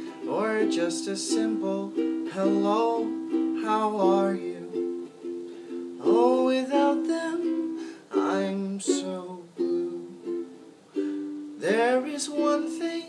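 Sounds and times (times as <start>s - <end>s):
person singing: 0.0s - 13.0s
ukulele playing chords: 0.0s - 13.0s.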